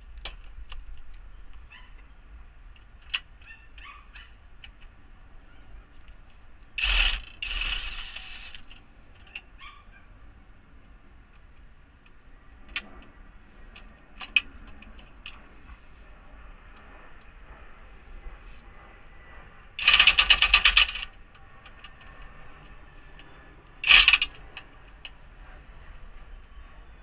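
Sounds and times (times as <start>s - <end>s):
loud harsh noise: 6.8s - 8.7s.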